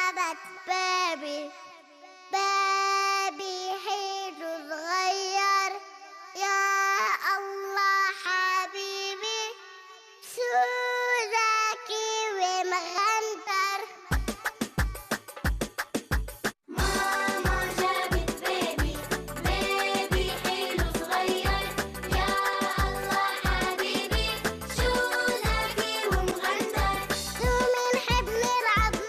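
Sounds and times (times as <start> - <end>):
girl singing: 0.0 - 14.5, 16.7 - 29.0
beat with deep bass thumps: 14.2 - 29.0.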